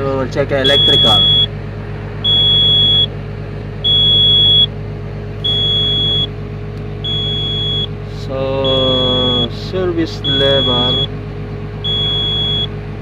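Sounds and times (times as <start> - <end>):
engine running: 0.0 - 13.0
warning buzzer beeping: 0.6 - 1.5, 2.2 - 3.1, 3.8 - 4.7, 5.4 - 6.3, 7.0 - 7.9, 8.6 - 9.5, 10.2 - 11.1, 11.8 - 12.7.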